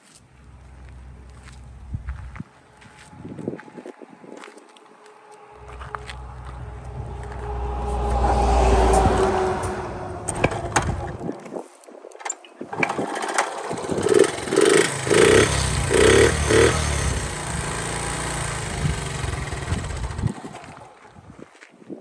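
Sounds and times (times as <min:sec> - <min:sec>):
small motorcycle engine revving and idling: 0:08.9 - 0:11.2, 0:12.7 - 0:21.2.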